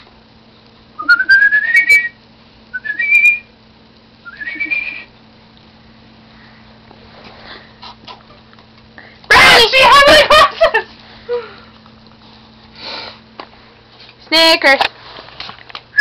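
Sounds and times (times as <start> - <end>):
person whistling rising notes: 2.8 - 3.5, 4.2 - 5.1.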